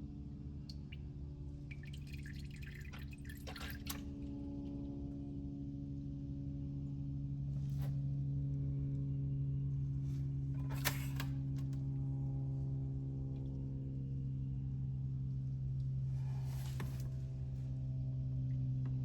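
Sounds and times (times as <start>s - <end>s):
oil draining into a pan: 0.7s - 4.2s.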